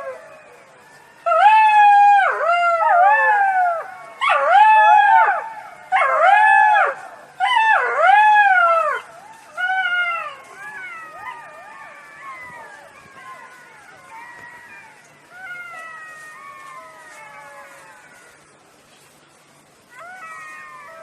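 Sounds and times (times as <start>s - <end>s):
fox calling: 0.0s - 18.6s, 19.8s - 21.0s.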